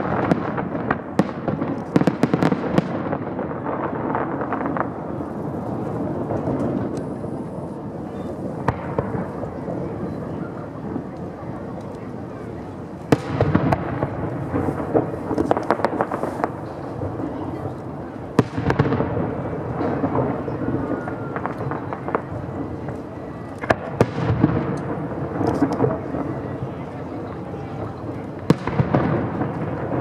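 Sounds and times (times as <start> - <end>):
fireworks bangs: 0.0 - 30.0
fireworks crackling: 0.0 - 30.0
low rumble of echoing explosions: 0.0 - 30.0.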